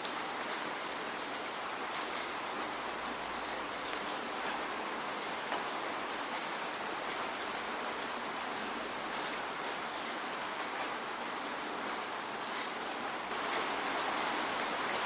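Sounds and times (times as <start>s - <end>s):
raindrops ticking on a surface: 0.0s - 15.0s
steady rainfall hiss: 0.0s - 15.0s.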